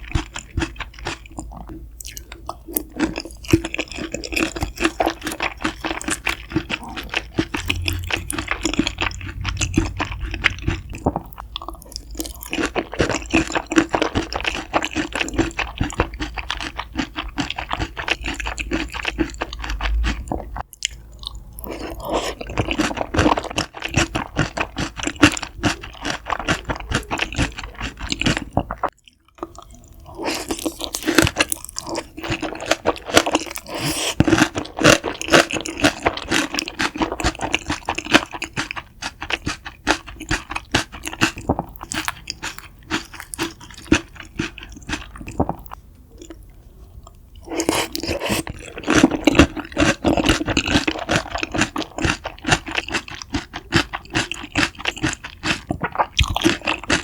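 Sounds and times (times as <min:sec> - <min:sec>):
crunching crispy food: 0:02.6 - 0:21.0, 0:21.6 - 0:46.4, 0:47.4 - 0:57.0.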